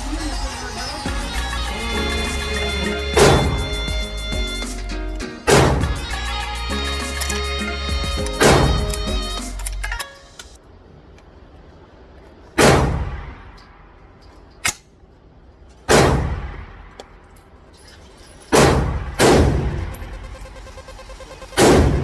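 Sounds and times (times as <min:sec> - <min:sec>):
rifle shots echoing indoors: 0:03.2 - 0:03.6, 0:05.5 - 0:06.0, 0:08.3 - 0:09.7, 0:12.6 - 0:14.8, 0:15.9 - 0:17.2, 0:18.5 - 0:20.7, 0:21.6 - 0:22.0.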